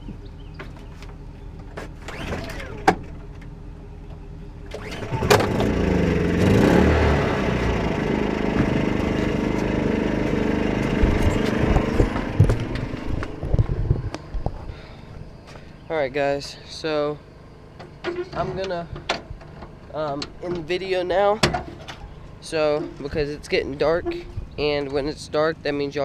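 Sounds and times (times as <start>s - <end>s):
vehicle engine starting and running: 0.0s - 15.5s.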